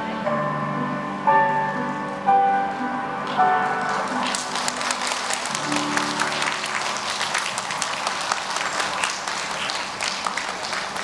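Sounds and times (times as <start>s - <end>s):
dance music: 2.4s - 8.3s
audience applauding: 3.2s - 11.0s.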